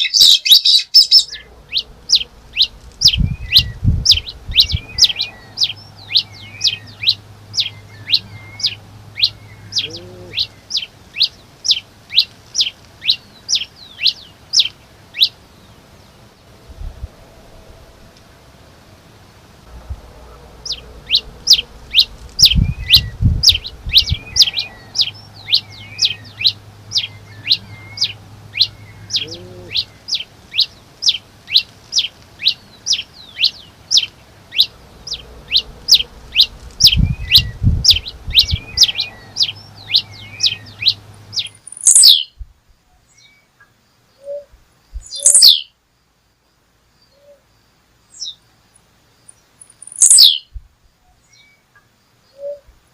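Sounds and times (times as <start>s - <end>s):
songbird chirping: 0.0s - 52.9s
low rumbles: 1.1s - 11.4s, 15.8s - 31.0s, 33.6s - 41.6s.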